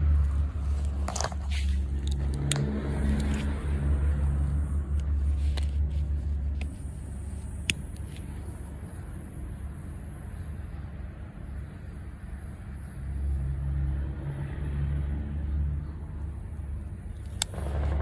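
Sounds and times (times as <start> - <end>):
vehicle engine rumble: 0.0 - 18.0
sharp snaps and clicks: 0.8 - 3.6, 17.2 - 18.0.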